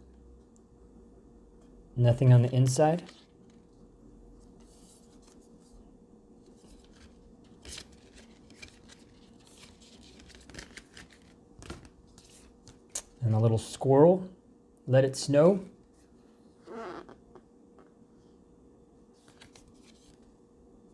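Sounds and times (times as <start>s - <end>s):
cards scraping and tapping: 6.6s - 13.1s, 19.2s - 20.2s.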